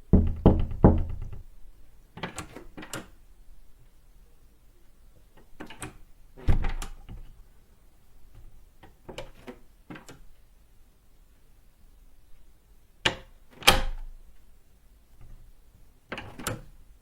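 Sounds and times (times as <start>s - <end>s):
heavy deep door thud: 0.1s - 1.5s
door latch and handle clicks: 2.2s - 3.2s, 5.5s - 7.2s, 13.0s - 14.1s, 16.1s - 16.8s.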